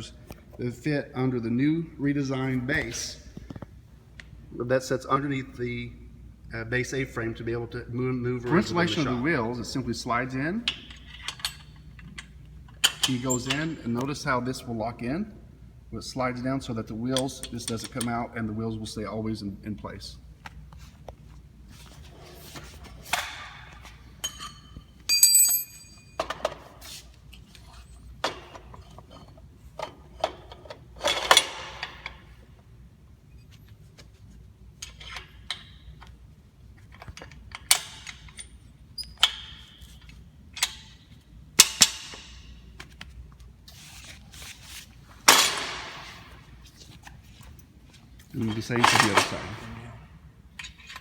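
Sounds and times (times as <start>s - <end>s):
metal parts knocking and clinking: 10.7s - 13.7s, 23.1s - 26.6s, 48.4s - 49.6s.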